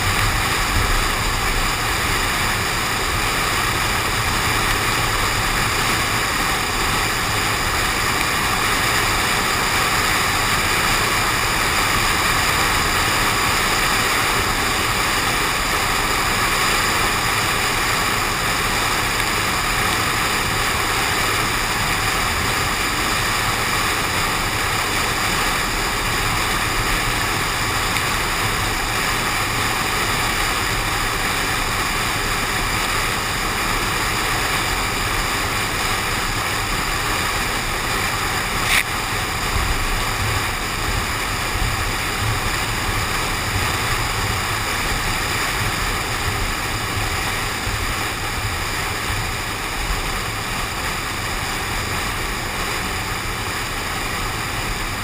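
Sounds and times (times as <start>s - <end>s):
car driving in the rain: 0.0s - 55.0s
sharp click: 38.6s - 38.9s.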